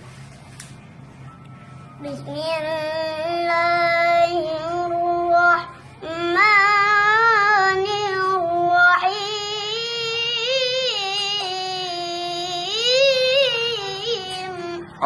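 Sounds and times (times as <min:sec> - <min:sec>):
child chanting melodic recitation: 0:02.0 - 0:15.0.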